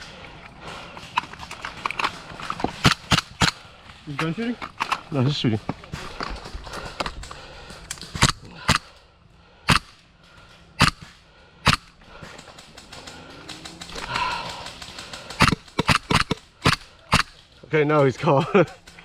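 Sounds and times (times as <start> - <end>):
airsoft gun shots: 9.7 - 10.0, 10.8 - 11.9, 15.4 - 17.4.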